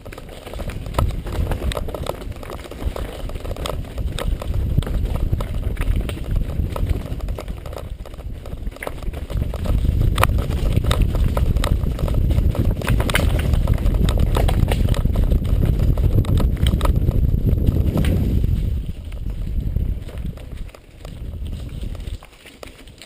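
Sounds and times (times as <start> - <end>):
sharp clicks and knocks: 0.0 - 17.1
wind rumbling on microphone: 0.0 - 23.0.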